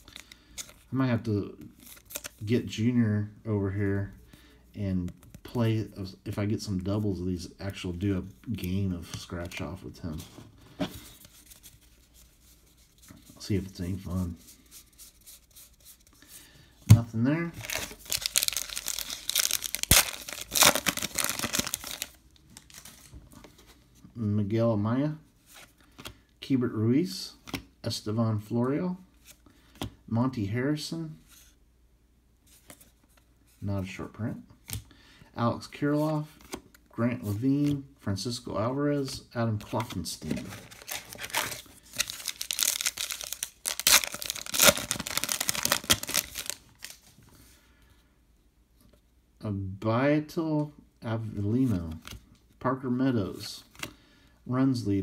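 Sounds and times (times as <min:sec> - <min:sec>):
card pack wrapper tearing and crinkling: 0:01.7 - 0:02.4, 0:17.5 - 0:23.1, 0:39.6 - 0:47.1
faint card handling: 0:07.7 - 0:23.8, 0:39.0 - 0:47.2.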